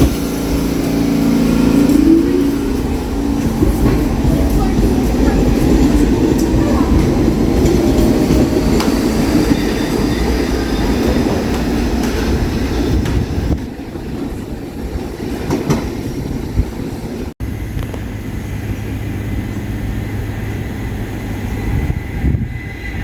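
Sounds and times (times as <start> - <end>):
high wheel squeal: 0.0 - 13.6, 19.4 - 23.0
wheels clacking over rail joints: 0.0 - 17.3
subway train running: 0.0 - 23.0.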